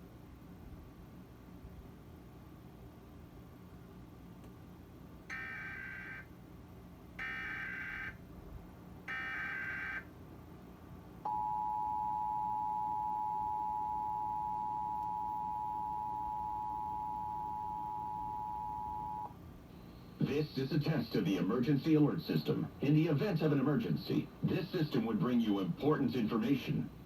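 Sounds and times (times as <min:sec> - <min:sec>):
two-tone attention signal: 0:11.3 - 0:19.3.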